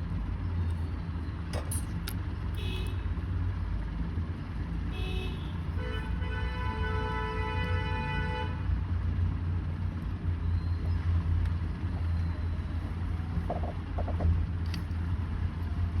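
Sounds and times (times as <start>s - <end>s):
road traffic rumble: 0.0s - 16.0s
vehicle horn: 2.6s - 3.0s, 4.9s - 8.7s.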